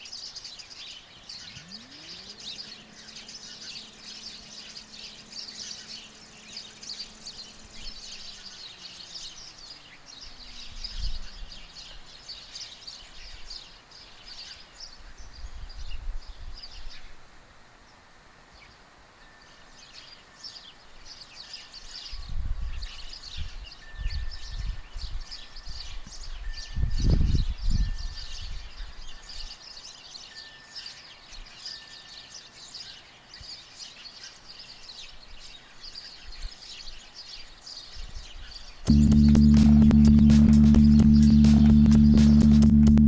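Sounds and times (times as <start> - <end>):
small birds chirping: 0.0 - 17.2, 17.8 - 43.0
low rumbling thumps: 38.9 - 43.0.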